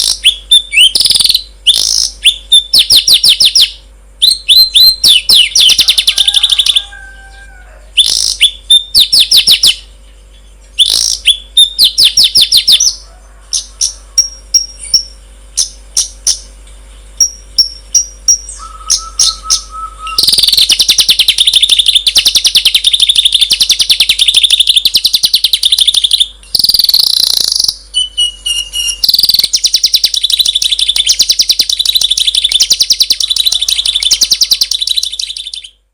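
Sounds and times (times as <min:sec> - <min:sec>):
songbird chattering trills: 0:00.0 - 0:07.1, 0:07.9 - 0:16.5, 0:17.1 - 0:35.8
bird whistle: 0:00.0 - 0:07.3, 0:08.0 - 0:09.8, 0:10.8 - 0:13.0, 0:17.6 - 0:35.8.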